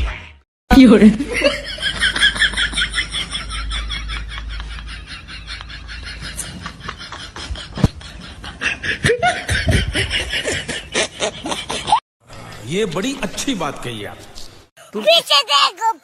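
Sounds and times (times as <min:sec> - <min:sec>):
rapid snickering laughter: 0:01.5 - 0:12.0.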